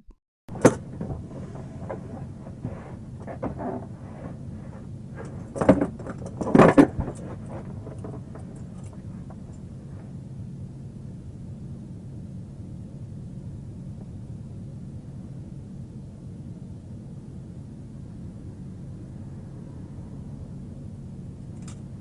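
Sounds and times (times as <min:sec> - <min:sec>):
clicks and rustles: 0:00.6 - 0:09.7.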